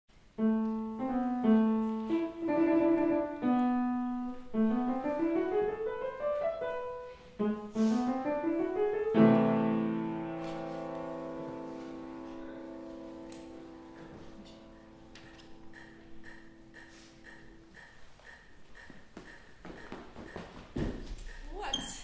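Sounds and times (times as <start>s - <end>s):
piano melody: 0.1s - 18.6s.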